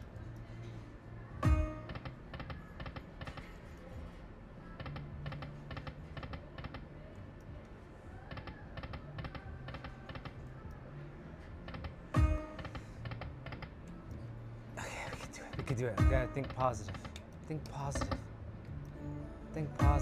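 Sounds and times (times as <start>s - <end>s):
low steady hum: 0.0s - 20.0s
slot machine rapid ticks: 15.6s - 17.2s.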